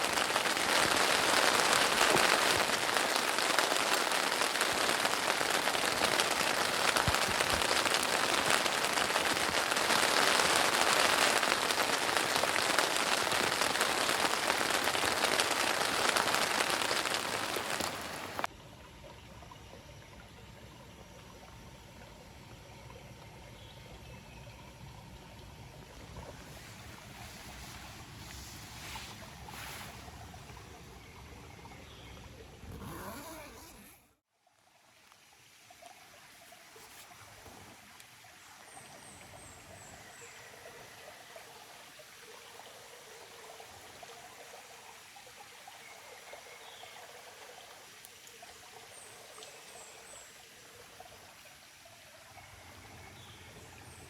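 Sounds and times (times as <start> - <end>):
heavy rain falling: 0.0 - 18.5.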